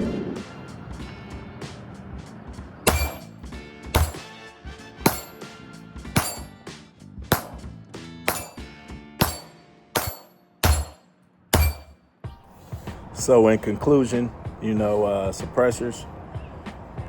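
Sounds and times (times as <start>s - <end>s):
sharp percussive hits: 2.9s - 3.3s, 4.0s - 4.2s, 5.1s - 5.4s, 6.2s - 6.6s, 7.3s - 7.6s, 8.3s - 8.6s, 9.2s - 11.0s, 11.6s - 12.0s.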